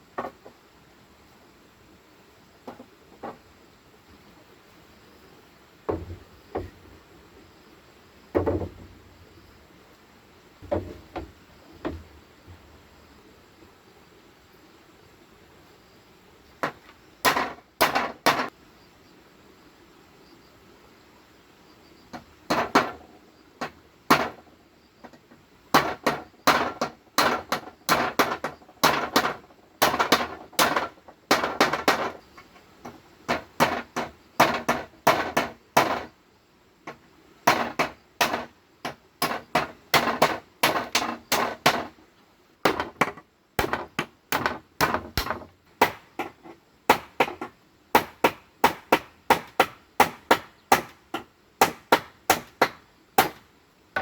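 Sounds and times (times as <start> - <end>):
sharp blows on bamboo: 16.6 - 18.5, 23.6 - 24.5, 25.7 - 32.2, 32.8 - 36.1, 36.9 - 41.9, 42.6 - 53.4.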